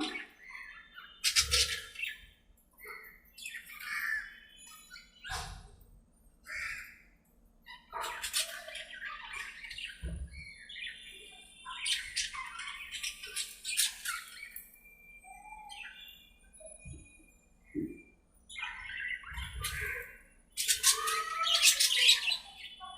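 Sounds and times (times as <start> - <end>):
budgerigars chattering: 1.2 - 2.2.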